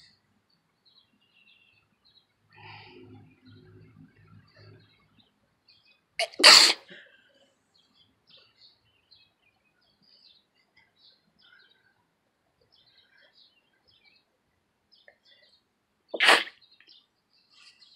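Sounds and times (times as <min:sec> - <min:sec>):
person sneezing: 0:06.2 - 0:07.0, 0:16.2 - 0:16.5.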